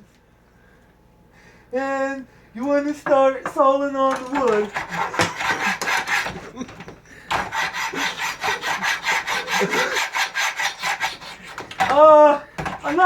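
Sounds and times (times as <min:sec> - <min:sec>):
hand saw cutting wood: 0:04.1 - 0:13.0.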